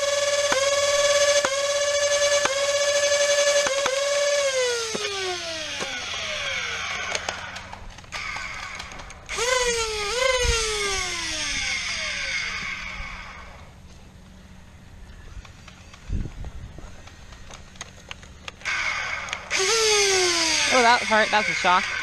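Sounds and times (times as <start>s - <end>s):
flywheel motors whining: 0.0s - 13.8s, 15.1s - 22.0s
sharp clicks: 7.0s - 9.4s.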